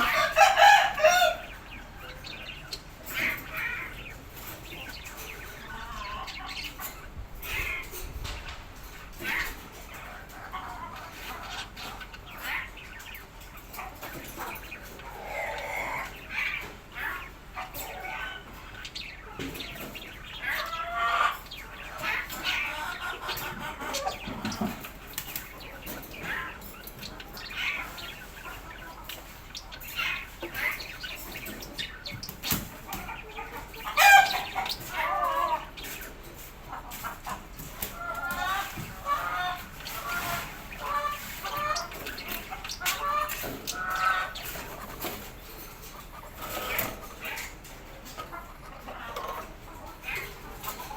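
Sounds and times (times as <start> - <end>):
birds calling and clucking: 0.0 - 50.9.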